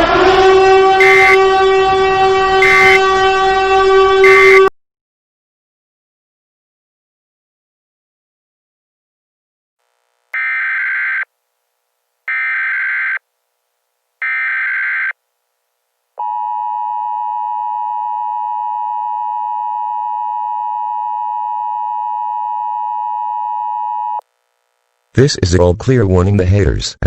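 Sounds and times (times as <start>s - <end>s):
two-tone attention signal: 1.0s - 1.6s, 2.5s - 3.2s, 4.2s - 4.7s
harsh data bursts: 2.6s - 3.1s, 4.2s - 4.7s, 10.4s - 11.3s, 12.3s - 13.2s, 14.2s - 15.2s.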